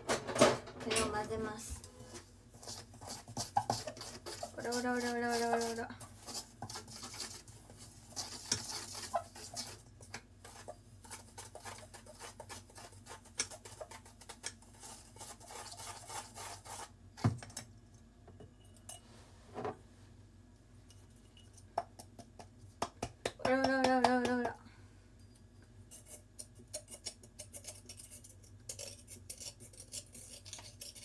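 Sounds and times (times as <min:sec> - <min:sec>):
utensil scraping and clinking bowl: 0:00.1 - 0:17.0, 0:18.5 - 0:19.2, 0:20.8 - 0:21.8, 0:25.2 - 0:31.0
utensil tapping bowl: 0:03.0 - 0:06.8, 0:21.7 - 0:24.6.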